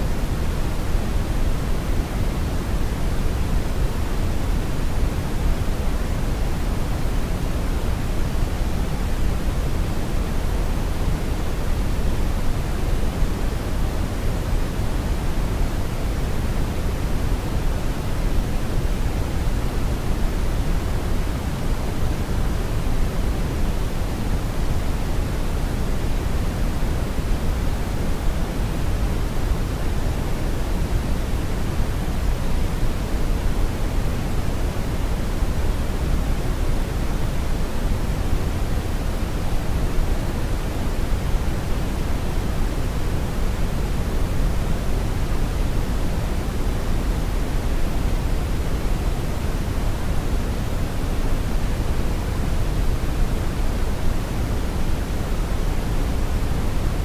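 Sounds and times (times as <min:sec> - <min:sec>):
brown noise hiss: 0:00.0 - 0:57.0.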